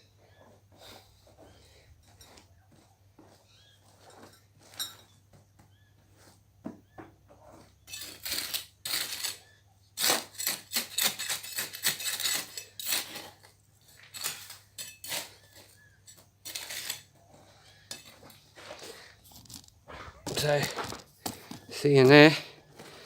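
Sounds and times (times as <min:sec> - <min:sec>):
metal tool scraping dirt: 0:00.0 - 0:06.5, 0:07.3 - 0:23.0
small metal clinks: 0:04.0 - 0:05.2.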